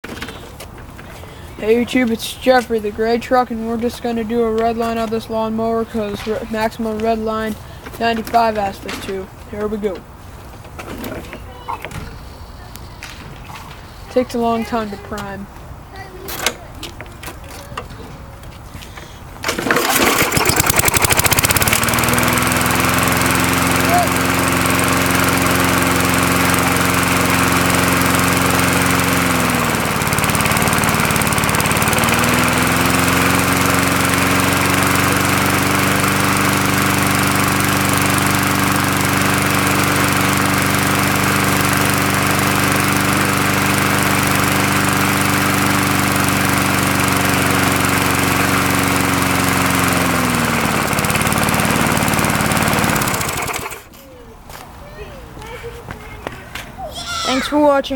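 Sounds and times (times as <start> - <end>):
lawn mower engine running: 0.0 - 11.2, 18.9 - 54.0
lawn mower engine knocks: 3.8 - 12.1, 19.0 - 53.9.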